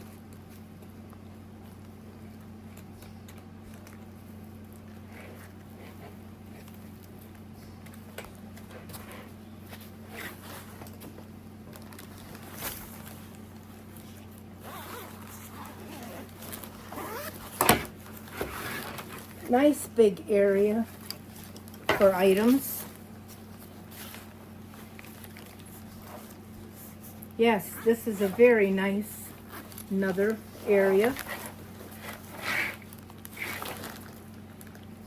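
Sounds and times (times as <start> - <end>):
zipper pulled open: 10.1 - 10.7, 14.6 - 19.2, 29.3 - 34.0
fabric rustling: 11.8 - 19.6, 20.8 - 34.6.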